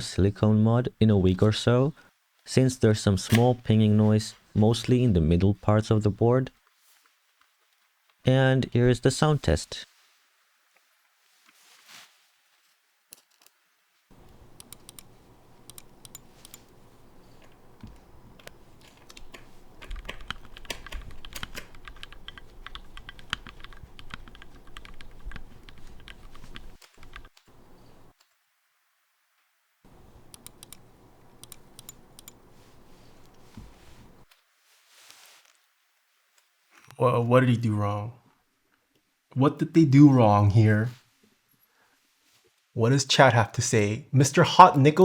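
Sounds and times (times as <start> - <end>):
mechanical keyboard typing: 14.2 - 28.1, 29.9 - 33.4.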